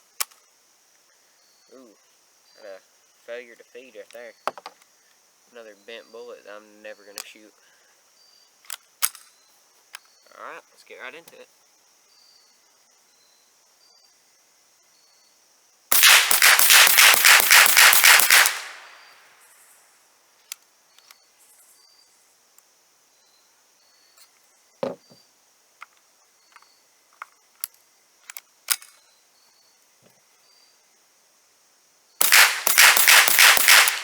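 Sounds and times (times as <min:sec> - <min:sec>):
rifle shots in rapid succession: 0:15.9 - 0:19.3, 0:32.2 - 0:34.0
dull thump: 0:24.8 - 0:25.2.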